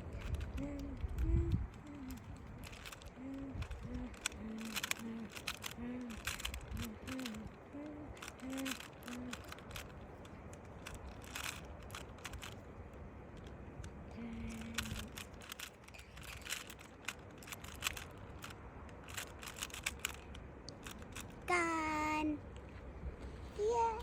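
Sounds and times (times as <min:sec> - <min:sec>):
plastic puzzle cube clicking: 0:00.0 - 0:21.4.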